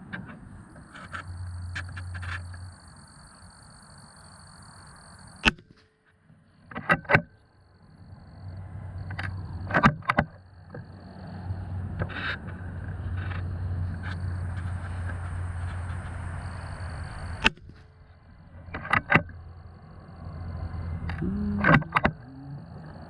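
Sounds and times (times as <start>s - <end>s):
low background rumble: 7.5s - 23.0s.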